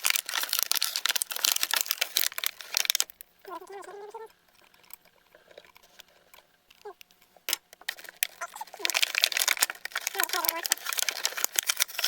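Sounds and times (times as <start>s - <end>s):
plastic packaging crinkling: 0.0s - 12.0s
plastic toy pieces clicking: 6.7s - 12.0s.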